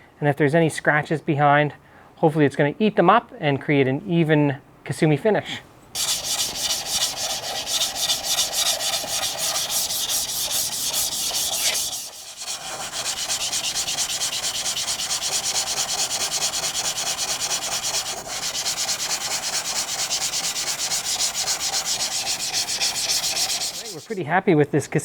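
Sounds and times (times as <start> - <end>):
knife blade rubbing on wet stone slurry: 6.0 - 24.2.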